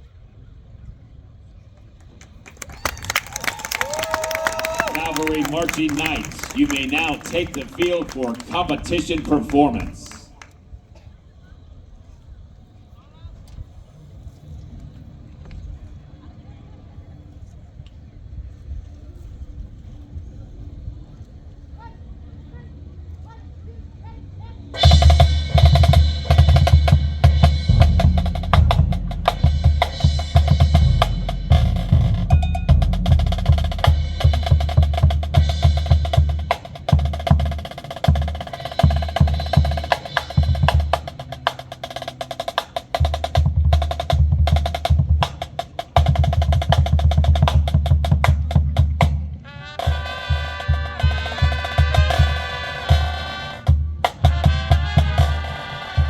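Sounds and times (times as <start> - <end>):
snare drum rolls: 2.5 - 10.5, 24.8 - 56.0
brass chords: 4.8 - 10.4, 24.8 - 56.0
bass drum hits: 24.8 - 37.5.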